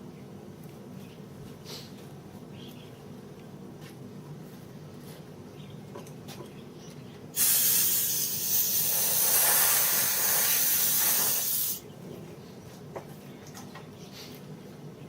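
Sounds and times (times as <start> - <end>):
air blow gun hissing: 7.4 - 11.8.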